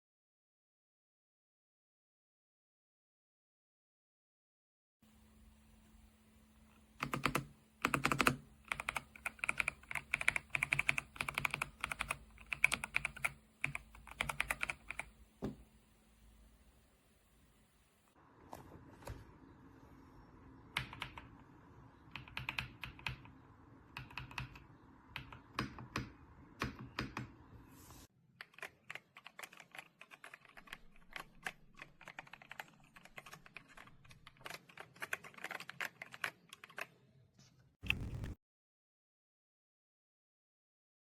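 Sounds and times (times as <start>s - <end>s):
low background hum: 5.0s - 28.7s
mechanical keyboard typing: 7.0s - 15.2s, 20.8s - 21.4s, 22.1s - 27.3s, 28.4s - 37.0s.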